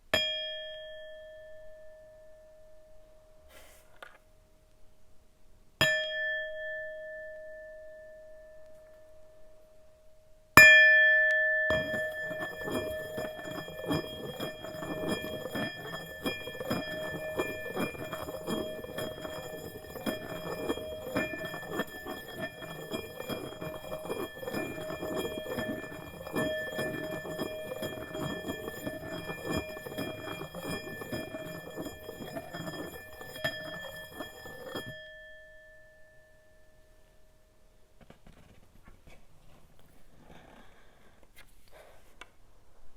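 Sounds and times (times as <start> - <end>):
singing bowl ringing tone: 0.2 - 3.4, 5.8 - 37.6
singing bowl struck: 10.6 - 35.9
mallet scraping bowl rim: 11.7 - 35.2.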